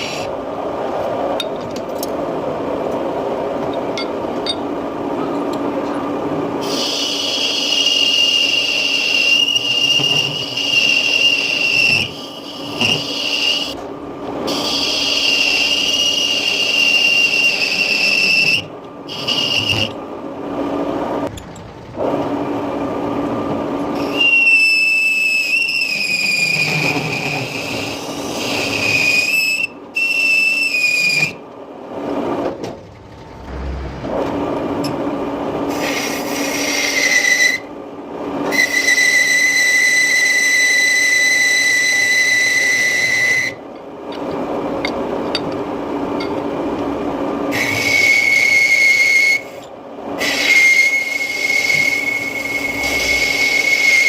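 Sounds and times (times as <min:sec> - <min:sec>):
lathe cutting tool squealing: 0:06.6 - 0:13.8, 0:14.5 - 0:20.0, 0:24.0 - 0:31.4, 0:47.5 - 0:54.0.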